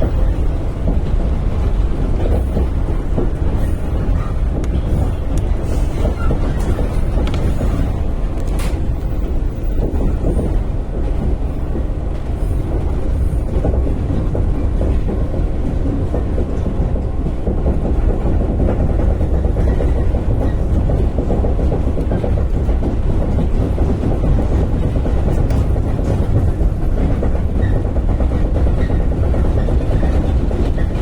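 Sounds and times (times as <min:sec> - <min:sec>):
train wheels rumbling on rails: 0:00.0 - 0:31.0.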